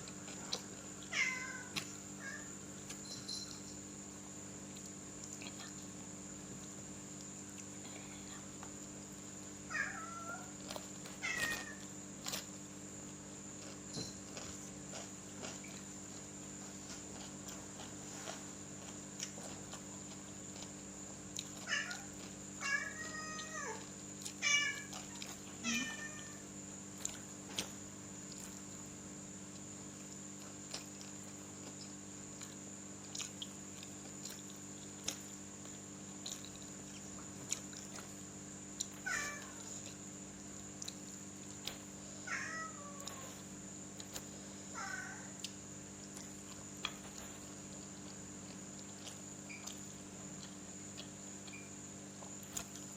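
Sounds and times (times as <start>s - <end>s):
cat meowing: 1.1s - 2.5s, 9.7s - 10.5s, 21.7s - 23.8s, 25.6s - 26.4s, 39.1s - 39.6s, 42.3s - 43.3s.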